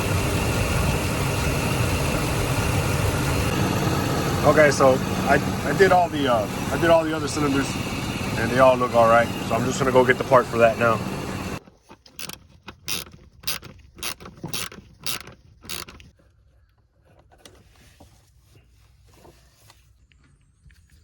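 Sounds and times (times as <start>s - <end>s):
engine running and cutting off: 0.0s - 11.6s
ratchet wrench clicking: 12.2s - 16.1s.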